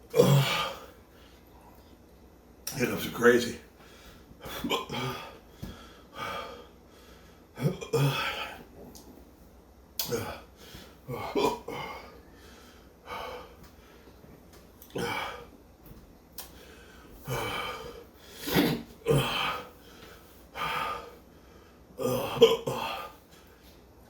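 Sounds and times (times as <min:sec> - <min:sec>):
man coughing: 0:00.1 - 0:00.8, 0:04.5 - 0:05.4, 0:11.1 - 0:12.0, 0:22.0 - 0:23.2
man hiccuping: 0:00.1 - 0:00.8, 0:04.5 - 0:05.4, 0:07.6 - 0:08.6, 0:10.0 - 0:10.4, 0:11.1 - 0:12.0, 0:18.5 - 0:19.7, 0:22.0 - 0:23.2.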